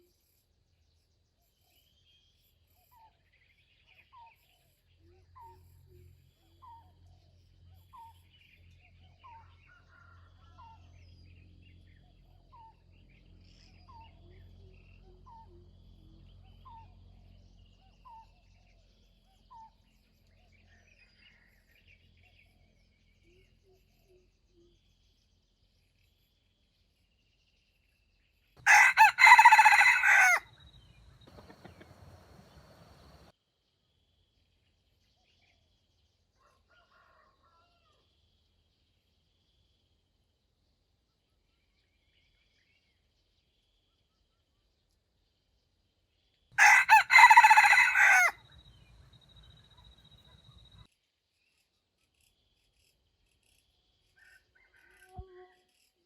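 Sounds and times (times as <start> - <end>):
rooster crowing: 28.6 - 30.5, 46.6 - 48.4.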